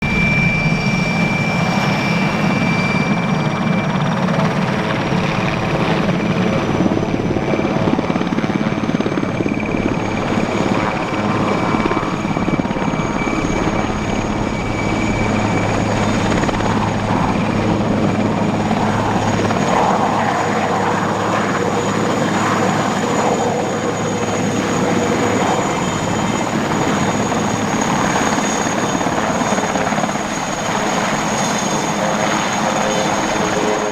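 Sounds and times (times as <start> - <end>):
helicopter rotor noise: 0.0 - 33.9
turbine engine whine: 0.0 - 33.9.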